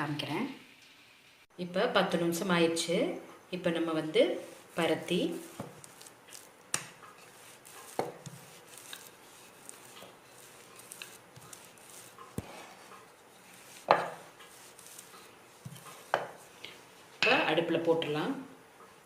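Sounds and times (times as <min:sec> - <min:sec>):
dough pressed on work surface: 0:04.2 - 0:16.7.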